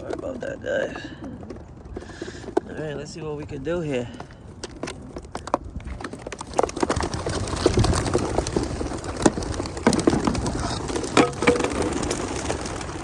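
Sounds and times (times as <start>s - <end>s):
pigeon wings flapping: 4.0s - 13.0s.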